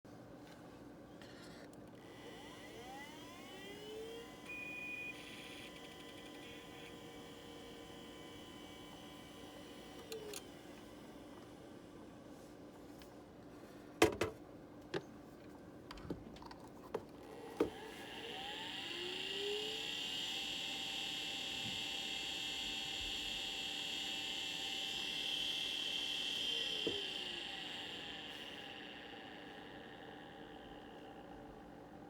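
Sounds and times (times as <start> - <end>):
hard drive spinning whine: 2.0 - 13.4, 17.0 - 32.0
clicks: 9.4 - 11.6.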